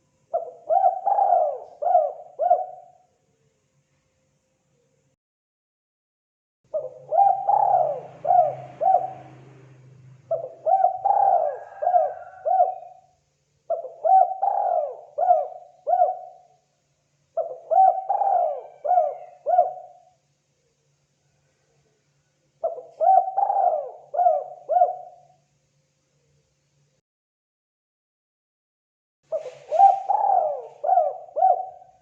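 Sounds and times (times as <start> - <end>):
dove cooing: 0.0 - 3.0, 6.7 - 13.1, 13.7 - 16.6, 17.4 - 20.2, 22.6 - 25.4, 29.3 - 32.0.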